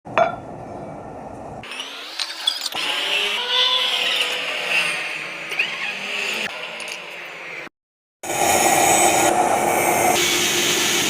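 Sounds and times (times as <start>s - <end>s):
high wavering cutting screech: 1.6s - 6.8s.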